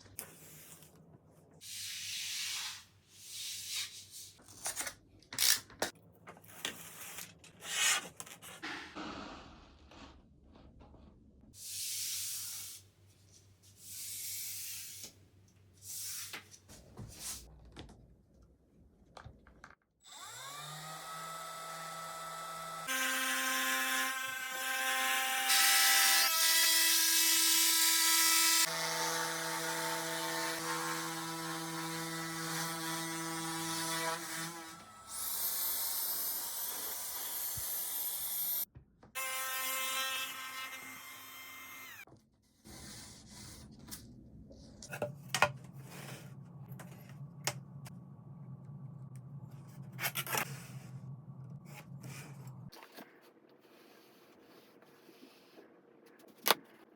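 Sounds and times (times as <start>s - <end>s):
hand rubbing and scraping: 15.8s - 17.5s
power tool motor whine: 20.1s - 23.6s.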